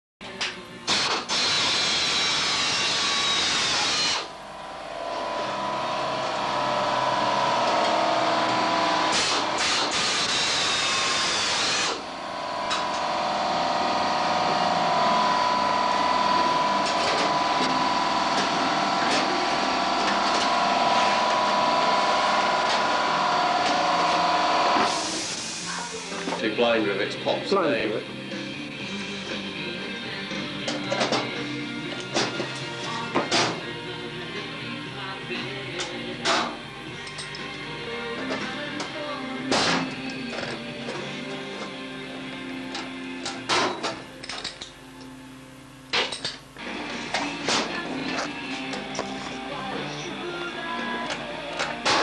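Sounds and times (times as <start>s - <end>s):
electric drill motor whine: 0.9s - 26.3s.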